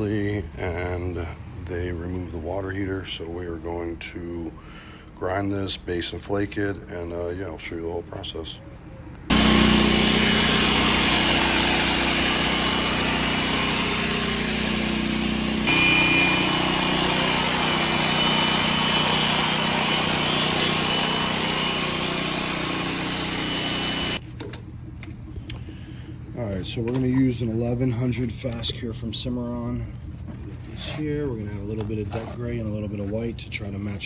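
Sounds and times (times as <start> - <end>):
grinder grinding concrete floor: 9.3 - 24.2.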